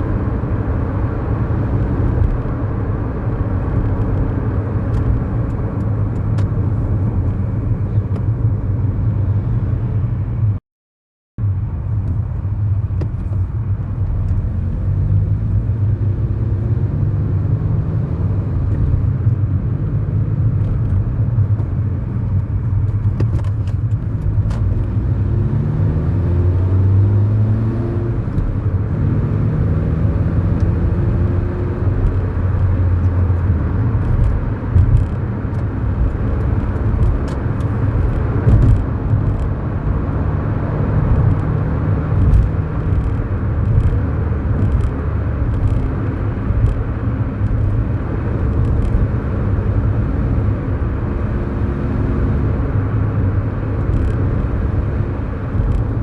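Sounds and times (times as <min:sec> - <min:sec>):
tyre and road noise: 0:00.0 - 0:10.6, 0:11.4 - 0:56.0
car engine running: 0:30.6 - 0:56.0.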